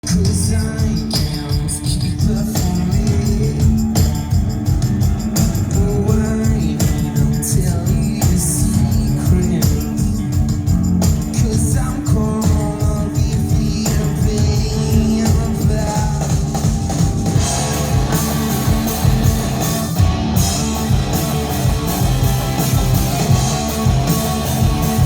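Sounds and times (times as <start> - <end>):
rock band playing live: 0.0 - 25.0
heavy accented drum hits: 16.3 - 25.0.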